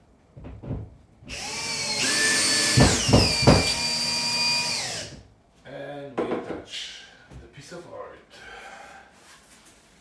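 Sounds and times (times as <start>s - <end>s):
power drill motor whining: 1.3s - 5.2s
sharp knocks: 2.6s - 3.8s.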